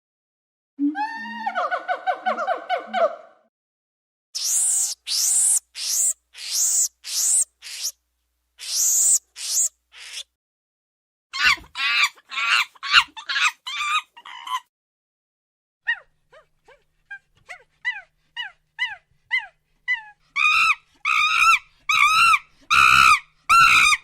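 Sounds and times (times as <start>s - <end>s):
monkey screeching calls: 4.4s - 7.9s, 8.6s - 10.3s, 11.4s - 14.6s, 20.4s - 24.0s.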